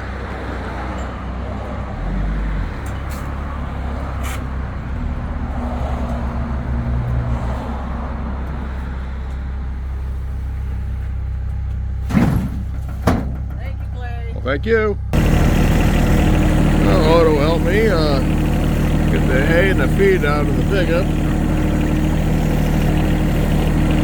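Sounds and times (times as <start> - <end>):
vehicle engine running: 12.7 - 24.0.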